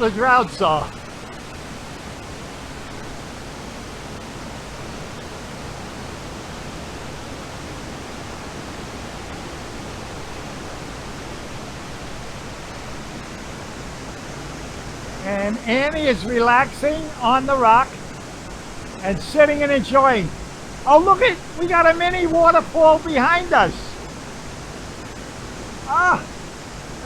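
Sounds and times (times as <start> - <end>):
rush of falling water: 0.0 - 27.0.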